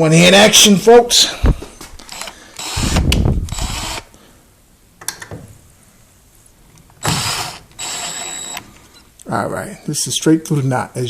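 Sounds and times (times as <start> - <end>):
impact driver rattling: 2.1 - 4.1.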